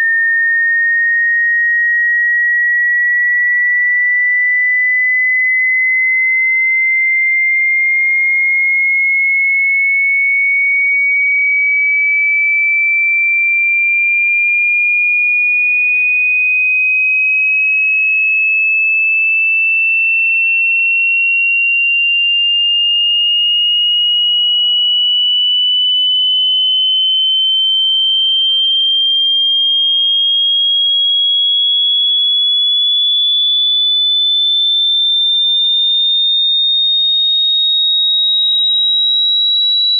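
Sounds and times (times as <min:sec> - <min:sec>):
sine tone rising in pitch: 0:00.0 - 0:08.4, 0:21.8 - 0:39.9.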